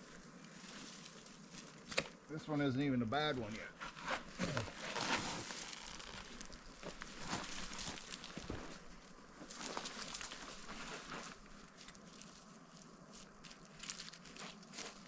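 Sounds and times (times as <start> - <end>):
footsteps on rocky slope: 3.8 - 12.4.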